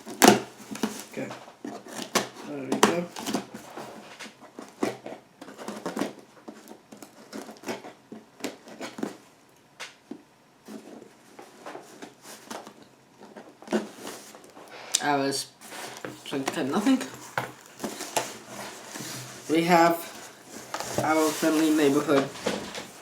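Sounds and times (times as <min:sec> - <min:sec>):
cardboard box rustling: 0:15.6 - 0:23.0.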